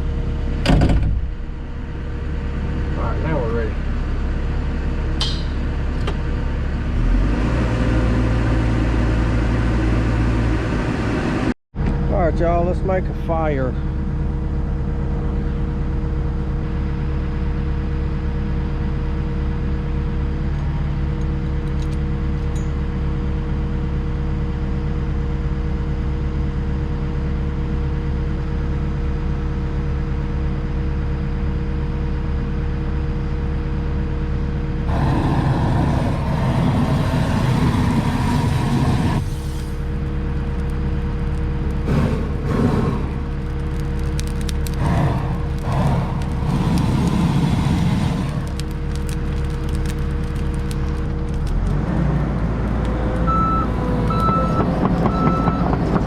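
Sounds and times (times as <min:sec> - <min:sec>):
excavator diesel engine idling: 0:08.7 - 0:51.4, 0:52.4 - 0:56.0
propane burner hissing: 0:34.9 - 0:51.0.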